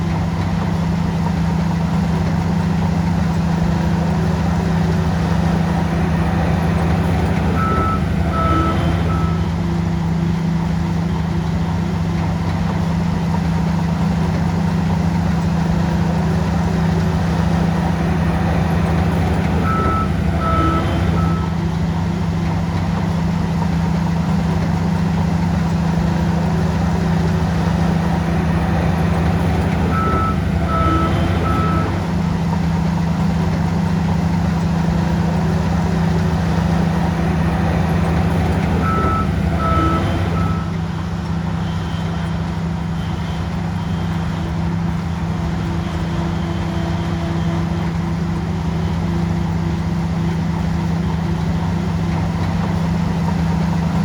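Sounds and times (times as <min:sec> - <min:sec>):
bulldozer diesel engine running: 0:00.0 - 0:54.0
reverse alarm beeps: 0:05.6 - 0:09.7, 0:17.9 - 0:21.9, 0:28.2 - 0:32.3, 0:36.9 - 0:43.3.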